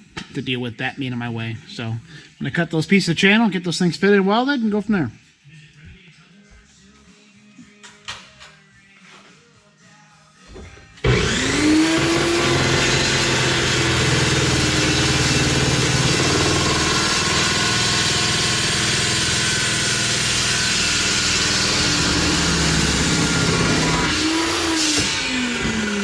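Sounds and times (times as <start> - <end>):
power tool grinding steel: 11.0 - 26.0.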